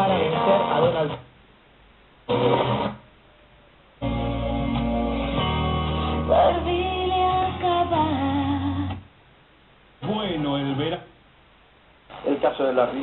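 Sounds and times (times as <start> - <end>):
sustained organ chords: 4.0 - 6.7
person singing long notes: 6.1 - 9.0.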